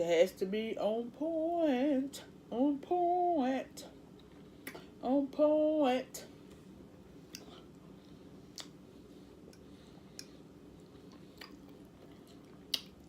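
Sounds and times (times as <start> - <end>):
chewing: 9.6 - 13.0.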